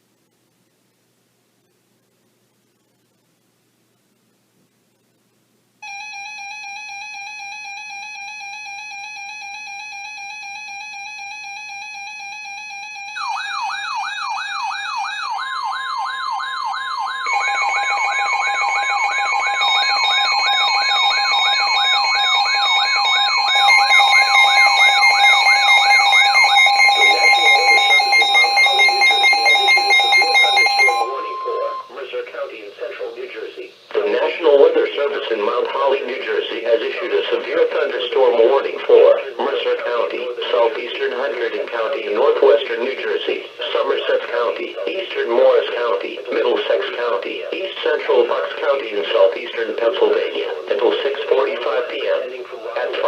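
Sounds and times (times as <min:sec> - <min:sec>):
steady alarm tones: 0:05.8 - 0:53.0
warbling siren-like tone: 0:06.4 - 0:32.0.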